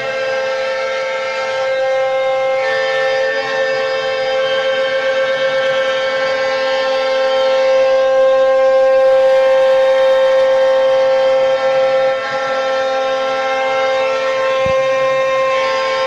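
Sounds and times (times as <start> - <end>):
router spindle high-pitched whine: 0.0 - 16.0.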